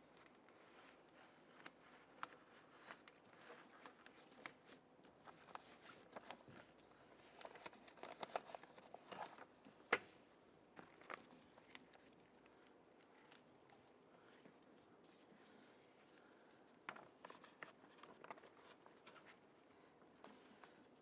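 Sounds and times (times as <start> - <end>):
plastic crinkling: 0.1 - 9.5, 16.1 - 19.4.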